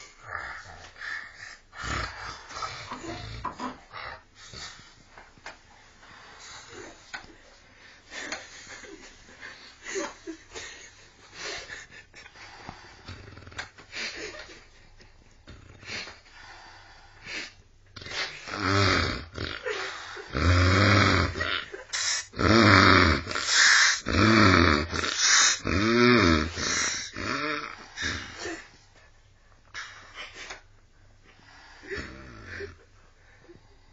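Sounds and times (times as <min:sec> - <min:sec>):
person snoring: 0:00.0 - 0:04.2, 0:18.0 - 0:28.6, 0:31.5 - 0:32.8.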